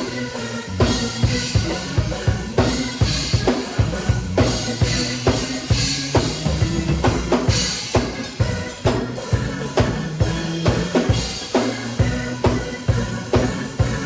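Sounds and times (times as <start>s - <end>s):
drum kit groove: 0.0s - 14.0s.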